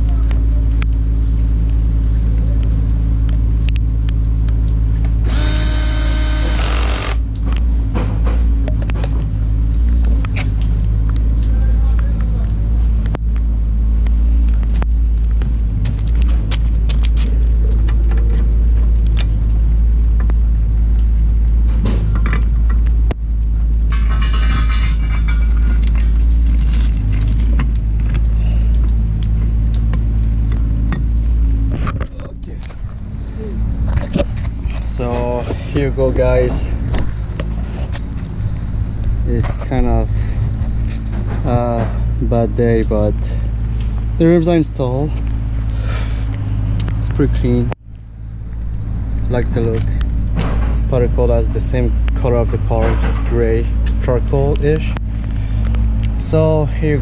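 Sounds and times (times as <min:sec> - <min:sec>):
car engine idling: 0:00.0 - 0:57.0
steady low hum: 0:00.0 - 0:57.0
power tool whirring: 0:05.2 - 0:07.2.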